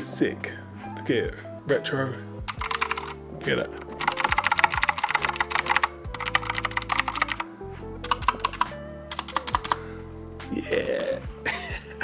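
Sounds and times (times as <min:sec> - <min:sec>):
background music: 0:00.0 - 0:12.0
fast typing on mechanical keyboard: 0:02.5 - 0:03.2, 0:03.8 - 0:07.4, 0:08.0 - 0:09.8.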